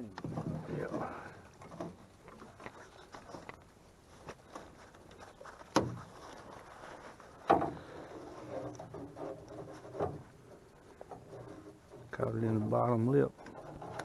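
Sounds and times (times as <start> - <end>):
small clicks and handling knocks: 13.3 - 14.0.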